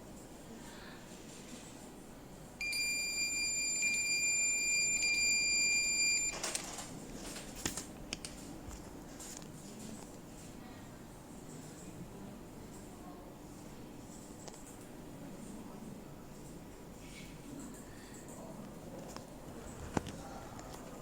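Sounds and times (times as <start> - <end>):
long high-pitched buzzer beep: 2.6 - 6.4.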